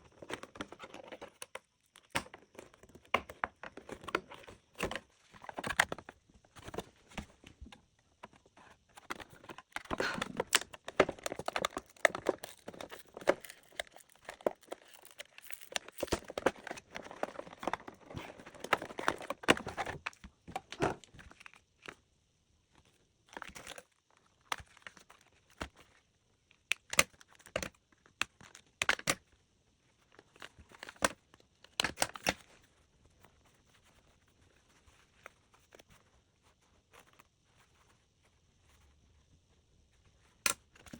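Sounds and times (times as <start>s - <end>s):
packaging being torn and crinkled: 9.6s - 20.1s.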